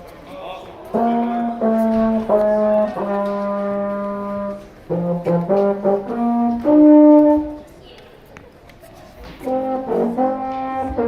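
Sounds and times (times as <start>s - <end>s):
euphonium solo: 0.9s - 7.7s, 9.4s - 11.0s.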